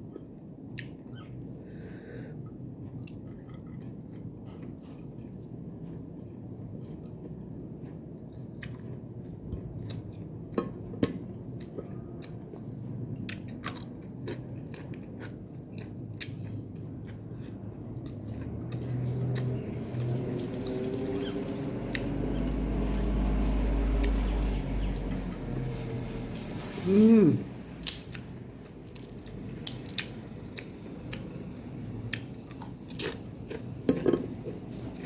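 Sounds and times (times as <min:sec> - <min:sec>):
person chewing food: 0:00.1 - 0:20.1, 0:27.8 - 0:35.0.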